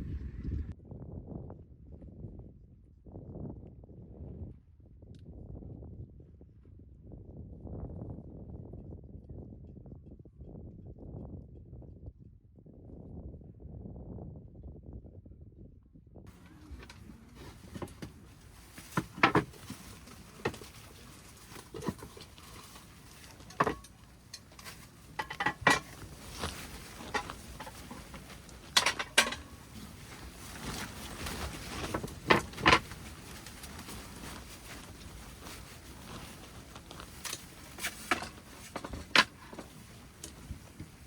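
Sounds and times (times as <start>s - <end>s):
cookware and utensils clinking: 16.3s - 33.0s.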